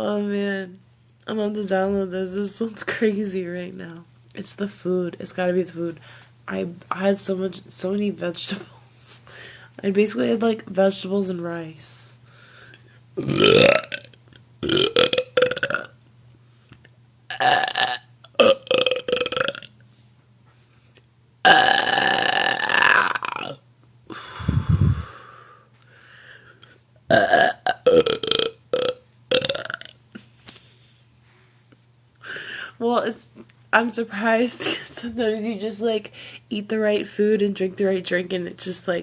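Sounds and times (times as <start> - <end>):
woman talking: 0.0 - 12.2, 32.8 - 39.0
woman belching: 13.2 - 15.9, 17.3 - 19.7, 21.5 - 23.6, 27.1 - 29.9.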